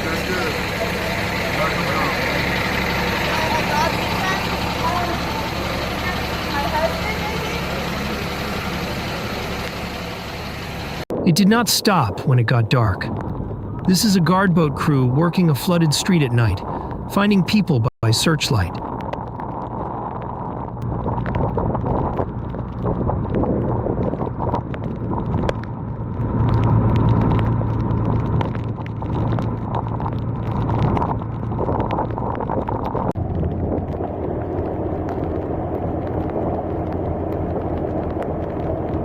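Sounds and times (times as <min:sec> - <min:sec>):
boat motor running: 0:00.0 - 0:11.1.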